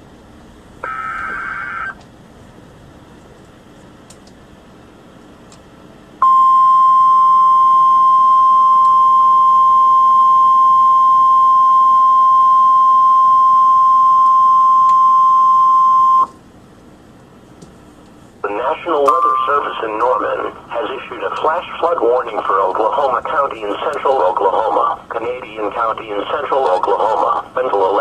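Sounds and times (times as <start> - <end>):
faint radio hiss: 0.8 - 2.0, 18.2 - 28.0
loud steady alarm tone: 0.8 - 2.0, 6.2 - 16.4, 18.4 - 21.0.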